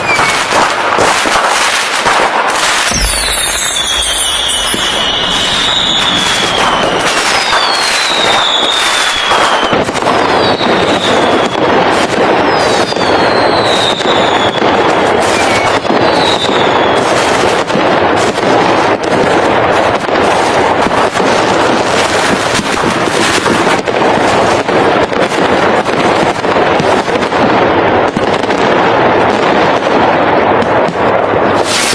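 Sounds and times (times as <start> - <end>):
firework whistles falling in pitch: 0.0 - 0.6, 2.7 - 11.8, 12.4 - 17.4
fireworks bangs and crackling: 0.0 - 31.9.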